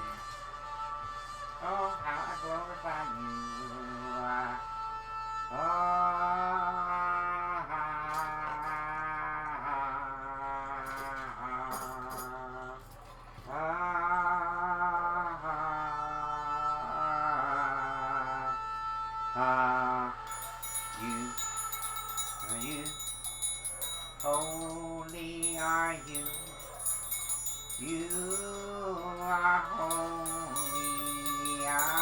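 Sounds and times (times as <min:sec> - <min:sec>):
person singing wordlessly: 0:00.0 - 0:12.8, 0:13.4 - 0:32.0
steady high tone: 0:20.3 - 0:32.0.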